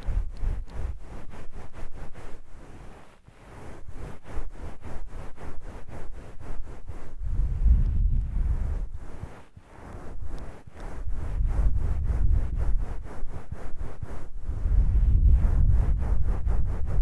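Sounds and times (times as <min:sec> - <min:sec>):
towel rubbing over microphone: 0:00.0 - 0:17.0.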